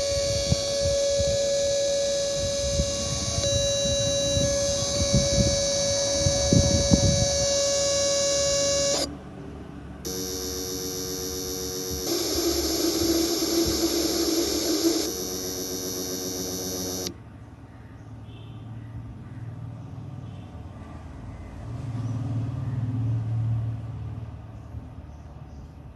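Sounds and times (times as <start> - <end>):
compressor whining: 0.0 - 9.1, 10.1 - 17.2.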